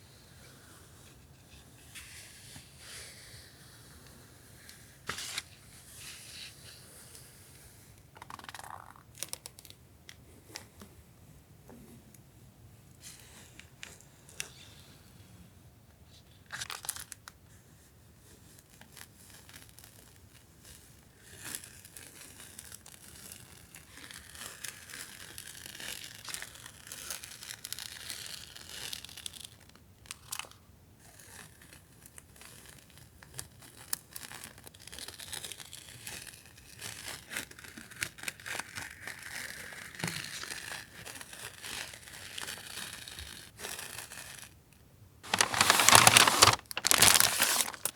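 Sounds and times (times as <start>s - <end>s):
packaging crinkling and rustling: 5.0s - 5.6s, 16.5s - 17.3s, 33.8s - 44.6s, 45.2s - 47.9s.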